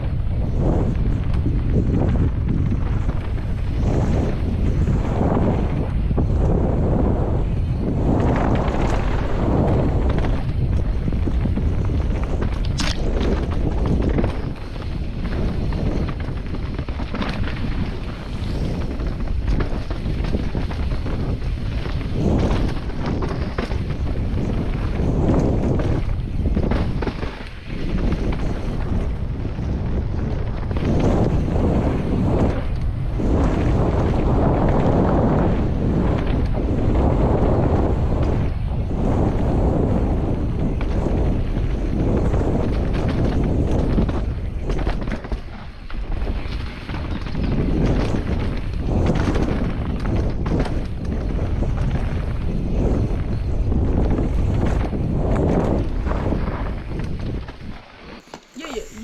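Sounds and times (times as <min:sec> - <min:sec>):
wind rushing over microphone: 0:00.0 - 0:59.0
tyre noise on wet trail: 0:01.2 - 0:38.5
bike knocks and rattles: 0:41.9 - 0:52.3.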